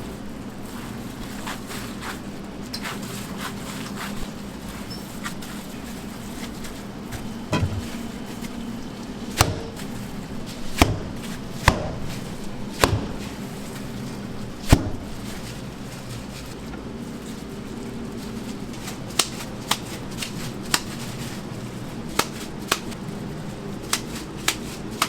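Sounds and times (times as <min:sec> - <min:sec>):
low kitchen hum: 0:00.0 - 0:25.0
knife chopping on cutting board: 0:07.2 - 0:08.0, 0:09.4 - 0:09.8, 0:12.8 - 0:13.2.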